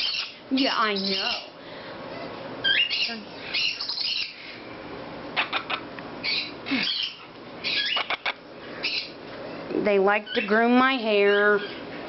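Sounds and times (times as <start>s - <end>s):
parrots squawking and chirping: 0.0s - 4.6s, 5.3s - 12.0s.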